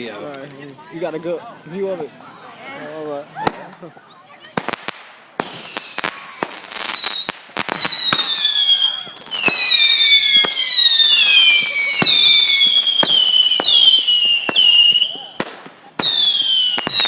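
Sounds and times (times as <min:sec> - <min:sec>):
firework cracks and pops: 0:04.4 - 0:17.0
firework whistles sliding down: 0:05.4 - 0:15.1.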